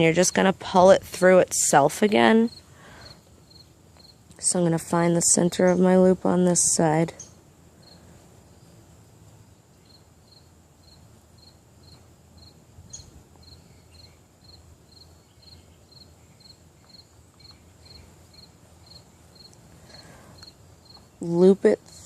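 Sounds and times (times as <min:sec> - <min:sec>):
cricket chirping: 0:02.5 - 0:04.2, 0:07.2 - 0:21.1.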